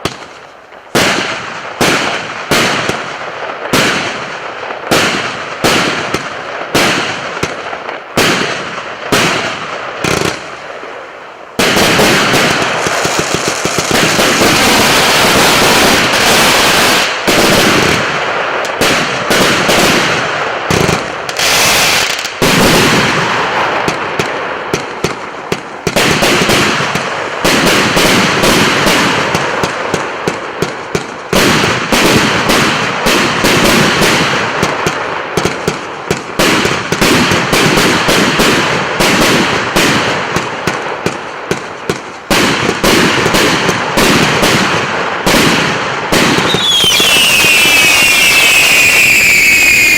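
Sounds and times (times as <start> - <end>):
firework volley crackling: 0.0 - 49.9
firework launches and bangs: 11.6 - 49.9.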